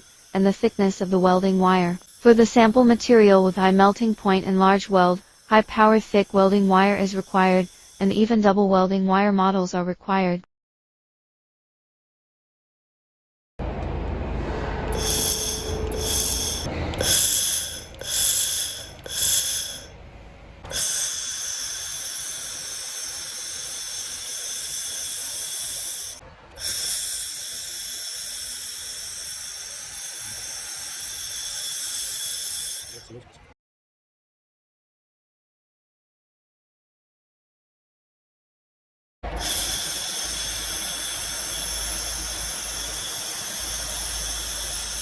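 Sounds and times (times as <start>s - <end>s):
laser welder hissing and whining: 0.0s - 8.2s, 15.0s - 20.0s, 20.7s - 33.2s, 39.3s - 45.0s.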